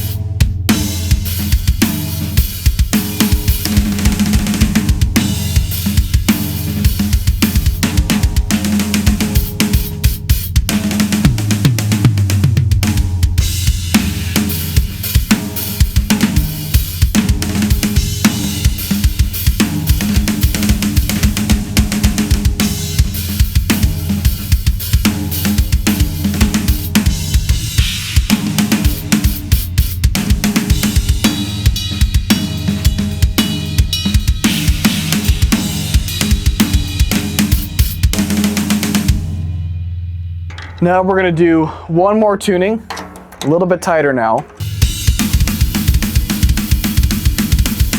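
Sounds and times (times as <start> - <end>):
bass drum: 0.0 - 39.3, 42.8 - 47.9
snare drum: 42.8 - 47.9.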